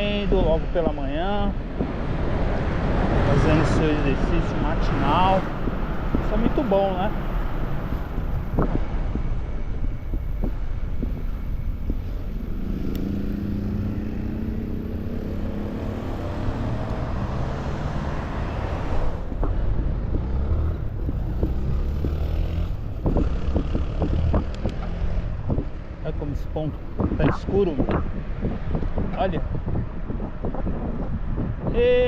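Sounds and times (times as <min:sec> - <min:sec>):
bicycle road rumble: 0:00.0 - 0:32.0
wind: 0:00.0 - 0:32.0
vehicle engine passing by: 0:12.3 - 0:25.5.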